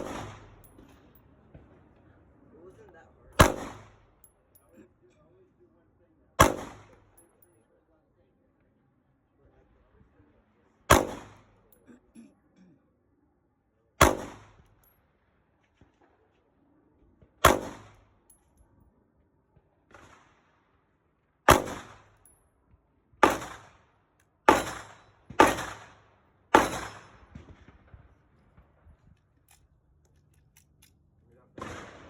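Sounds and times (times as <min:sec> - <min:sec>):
gunshots with ringing tail: 0:00.0 - 0:01.0, 0:03.4 - 0:04.2, 0:06.4 - 0:07.2, 0:10.9 - 0:12.0, 0:14.0 - 0:14.6, 0:17.4 - 0:18.0, 0:21.5 - 0:22.2, 0:23.2 - 0:23.7, 0:24.5 - 0:27.7, 0:31.6 - 0:32.0.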